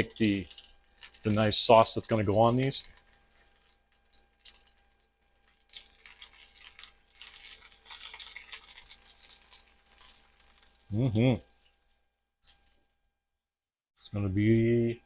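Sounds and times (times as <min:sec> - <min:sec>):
meat sizzling in a skillet: 0:00.0 - 0:12.0.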